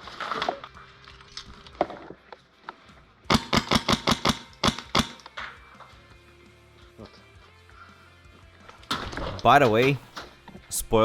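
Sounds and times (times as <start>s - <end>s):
airsoft gun shots: 3.3s - 5.2s.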